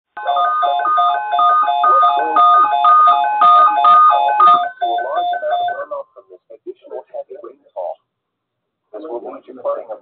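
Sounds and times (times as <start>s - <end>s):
electronic beeping melody: 0.2s - 6.0s.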